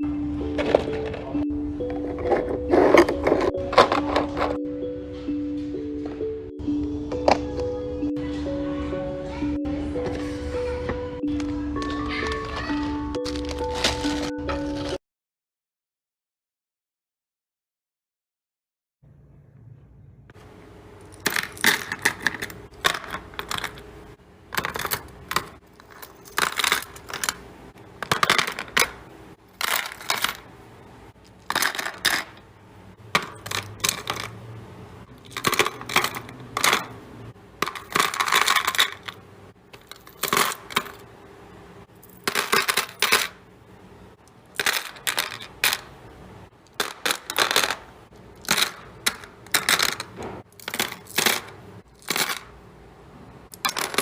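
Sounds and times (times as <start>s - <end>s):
hard containers clinking: 0.4s - 4.6s, 21.0s - 30.5s, 31.2s - 32.4s, 33.1s - 34.4s, 35.1s - 41.1s, 41.9s - 43.4s, 44.5s - 46.0s, 46.7s - 52.5s, 53.5s - 54.0s.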